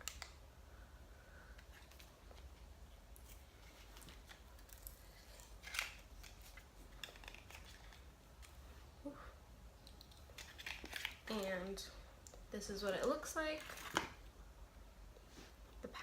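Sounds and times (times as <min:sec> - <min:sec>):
packaging clicks and crinkles: 0:03.2 - 0:08.6, 0:09.8 - 0:11.5.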